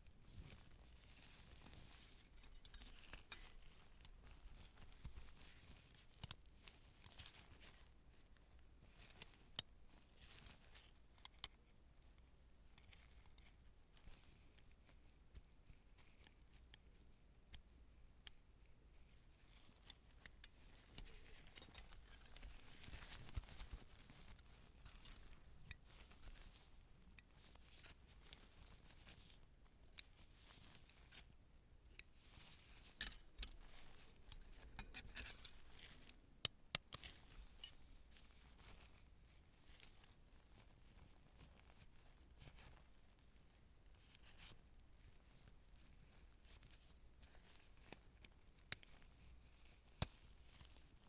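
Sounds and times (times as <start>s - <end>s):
metallic clicks and clinks: 20.2s - 23.7s, 32.9s - 37.8s.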